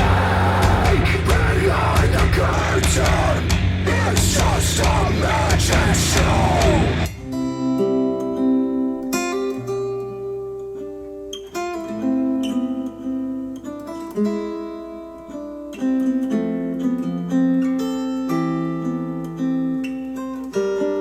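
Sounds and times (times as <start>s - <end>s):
acoustic guitar music: 0.0s - 21.0s.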